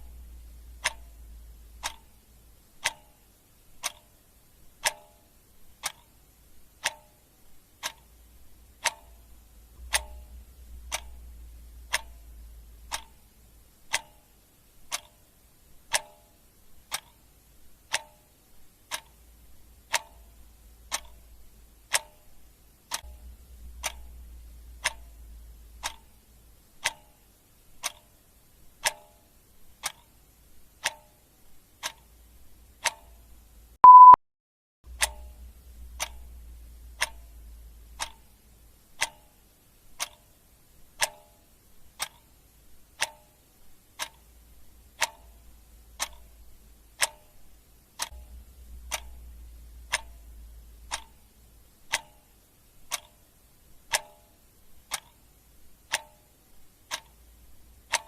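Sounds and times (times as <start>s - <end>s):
clock ticking: 0.0s - 34.2s, 34.9s - 58.0s
short loud beep: 33.8s - 34.2s.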